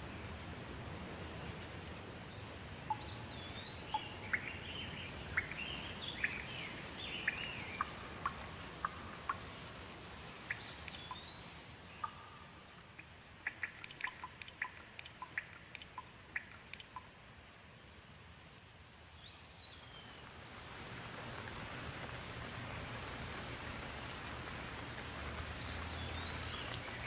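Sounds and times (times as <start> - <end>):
raindrops ticking: 0.0 - 17.4, 20.2 - 27.0
steady rain hiss: 0.0 - 27.0
songbird whistling: 10.5 - 12.4, 25.6 - 27.0.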